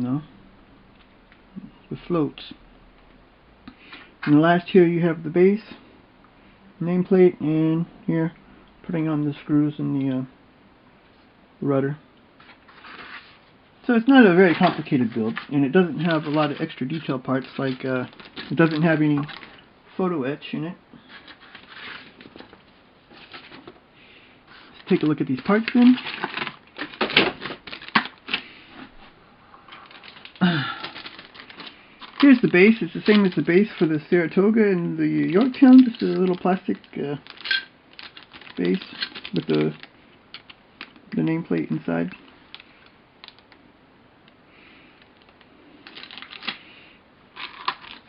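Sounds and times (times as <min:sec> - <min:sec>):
plastic parts rustling: 0:12.4 - 0:19.7, 0:21.0 - 0:23.8, 0:24.5 - 0:34.5, 0:35.1 - 0:43.6, 0:44.9 - 0:46.7, 0:47.3 - 0:48.0
plastic parts clicking and clattering: 0:14.4 - 0:19.6, 0:24.6 - 0:28.5, 0:29.7 - 0:34.0, 0:35.2 - 0:41.2, 0:42.1 - 0:43.6, 0:45.0 - 0:46.6, 0:47.4 - 0:48.0.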